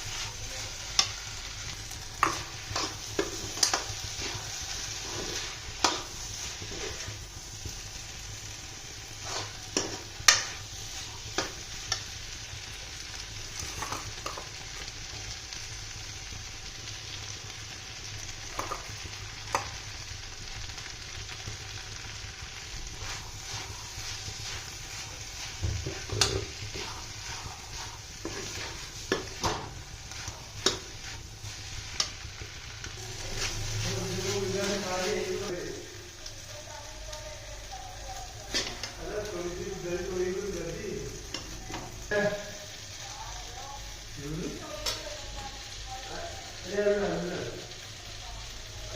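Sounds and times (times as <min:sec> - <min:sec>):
spatula scraping a pan: 0:00.0 - 0:07.3, 0:09.0 - 0:12.0, 0:22.8 - 0:35.5
vegetables sizzling in a pan: 0:00.0 - 0:48.9.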